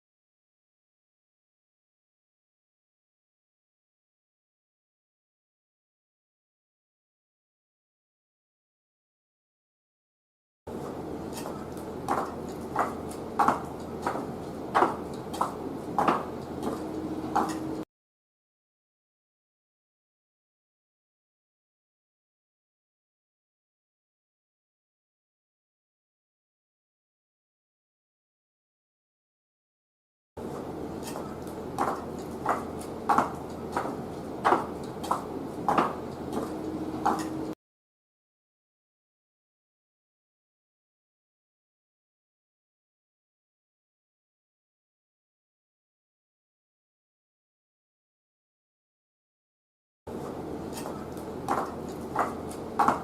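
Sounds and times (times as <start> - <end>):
low background hum: 10.7 - 17.8, 30.4 - 37.6, 50.1 - 53.0
wooden clog footsteps: 11.4 - 17.8, 31.0 - 37.6, 50.2 - 53.0.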